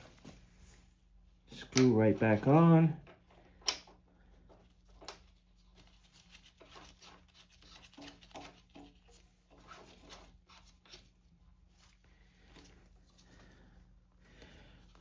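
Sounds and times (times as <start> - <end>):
low steady hum: 8.6 - 15.0.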